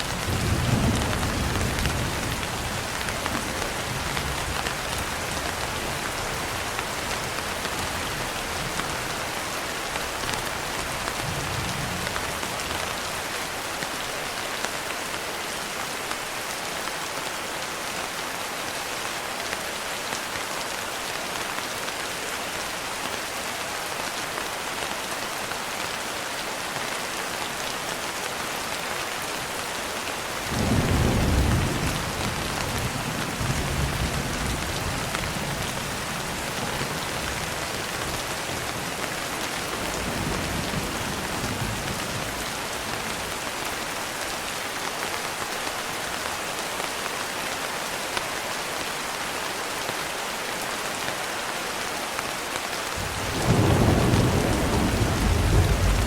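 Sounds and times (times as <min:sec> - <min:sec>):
steady rain hiss: 0:00.0 - 0:56.0
thunder rumbling: 0:53.0 - 0:56.0.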